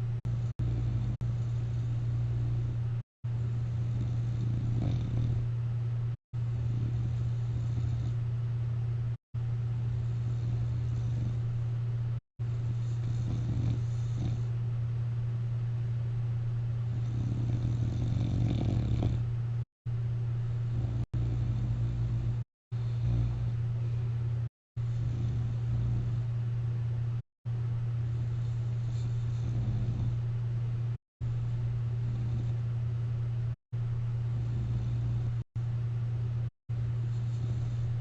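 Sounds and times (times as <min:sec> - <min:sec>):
steady low hum: 0:00.0 - 0:38.0
person snoring and breathing: 0:00.5 - 0:02.8, 0:03.6 - 0:05.5, 0:06.4 - 0:08.2, 0:09.9 - 0:11.5, 0:12.5 - 0:14.5, 0:16.9 - 0:19.2, 0:20.6 - 0:23.6, 0:24.8 - 0:26.3, 0:28.0 - 0:30.2, 0:31.9 - 0:32.7, 0:34.3 - 0:35.5, 0:37.1 - 0:38.0.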